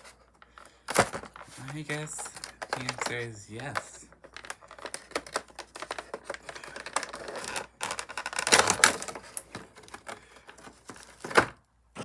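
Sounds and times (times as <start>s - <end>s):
packaging clicking and crinkling: 0.0s - 11.6s.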